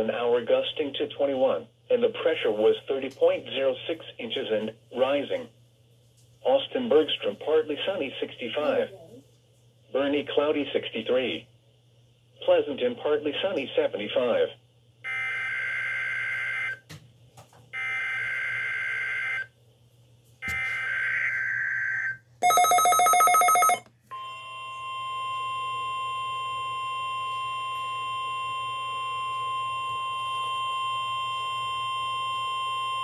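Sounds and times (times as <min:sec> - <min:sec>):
steady warning alarm tone: 0:15.0 - 0:16.8, 0:17.8 - 0:19.5, 0:20.4 - 0:33.0.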